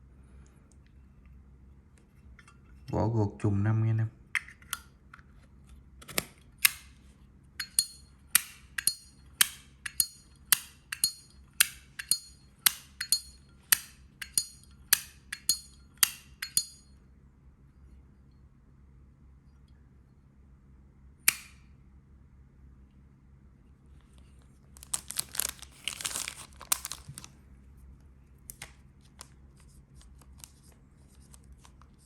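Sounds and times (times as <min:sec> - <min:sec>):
lighter lid clinking open and shut: 0:07.6 - 0:16.8.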